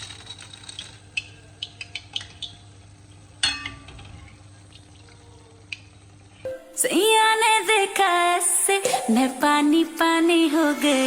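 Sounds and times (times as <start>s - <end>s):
metallic clang: 3.4s - 4.2s.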